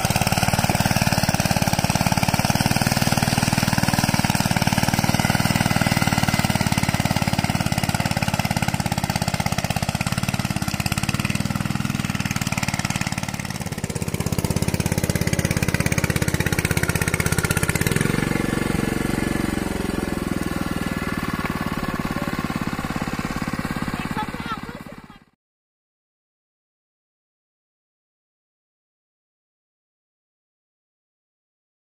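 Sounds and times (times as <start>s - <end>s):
diesel engine chugging: 0.0s - 25.3s.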